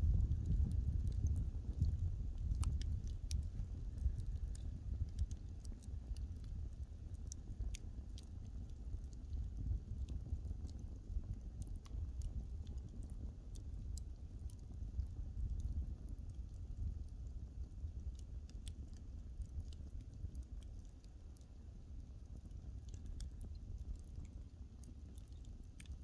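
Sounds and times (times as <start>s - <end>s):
burning wood popping and snapping: 0.0s - 17.3s
low rumble of fire: 0.0s - 26.0s.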